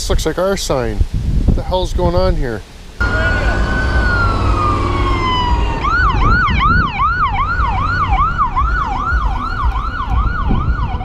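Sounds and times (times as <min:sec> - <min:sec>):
emergency siren wailing and yelping: 0:03.0 - 0:11.0.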